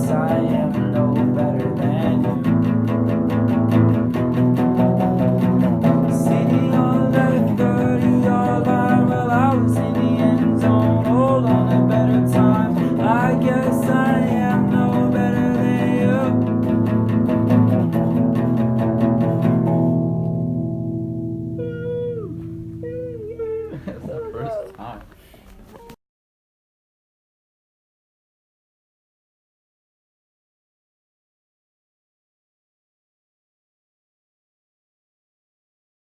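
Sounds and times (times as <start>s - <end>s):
indie rock guitars and bass: 0.0s - 24.6s
lead guitar bending notes: 0.0s - 24.6s.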